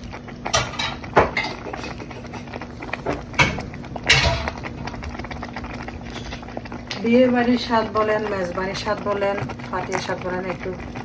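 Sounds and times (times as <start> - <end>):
spoon knocking and scraping pot: 3.0 - 4.7.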